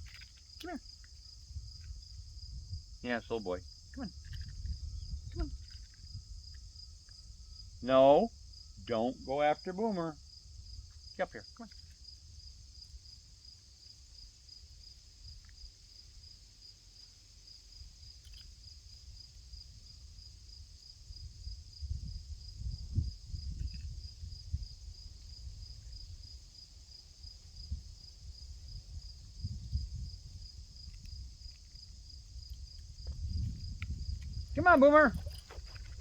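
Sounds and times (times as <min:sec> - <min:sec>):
cricket chirping: 0:00.0 - 0:36.0.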